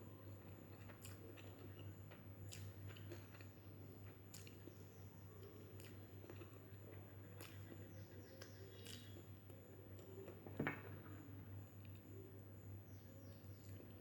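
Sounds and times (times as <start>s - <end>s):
close-up chewing: 0.4s - 10.2s.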